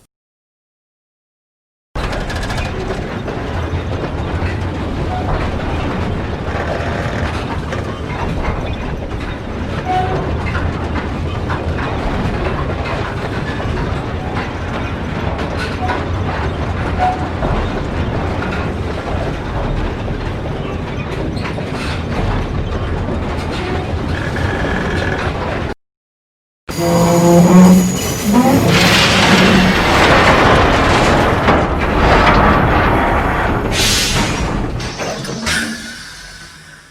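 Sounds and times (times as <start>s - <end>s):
train wheels clattering on track: 2.0s - 25.8s
brief high tones: 26.7s - 29.7s.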